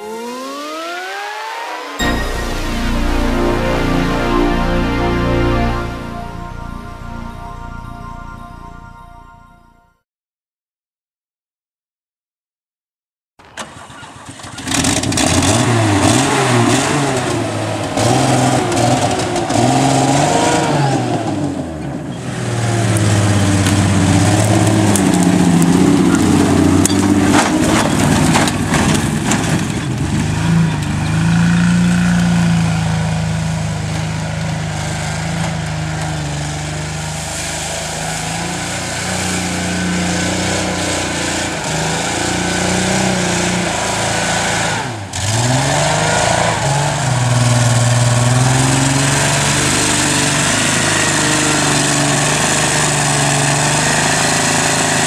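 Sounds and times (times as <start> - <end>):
car engine revving: 0.0 - 2.0, 14.3 - 55.0.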